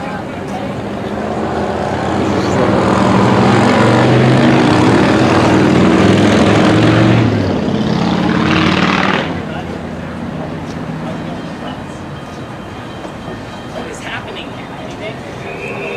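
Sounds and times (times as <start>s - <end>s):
loud engine passing close: 0.8s - 11.4s.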